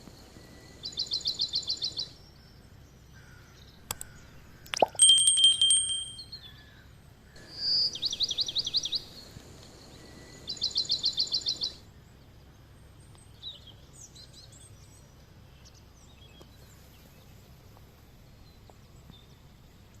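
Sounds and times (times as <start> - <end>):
low steady background: 2.2 - 7.6
bird trills: 3.9 - 6.6.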